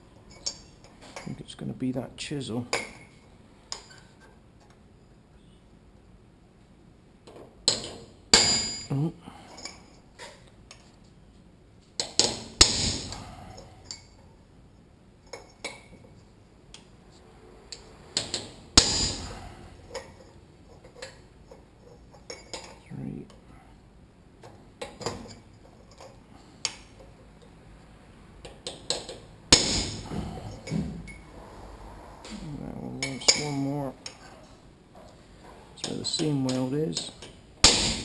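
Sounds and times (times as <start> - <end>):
hammer striking chisel on metal: 18.2 - 19.3, 29.5 - 30.1.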